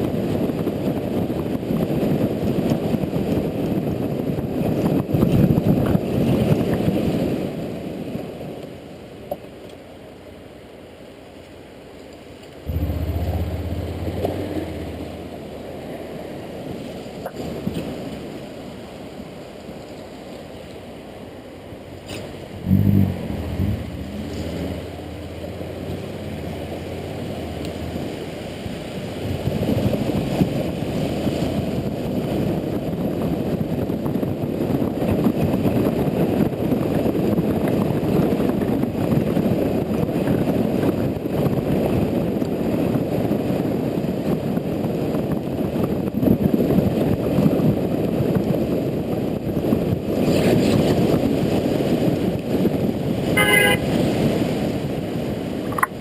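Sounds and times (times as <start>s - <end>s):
wind and road rush: 0.0s - 56.0s
motorcycle engine running: 12.6s - 15.7s
motorcycle horn: 53.3s - 54.0s.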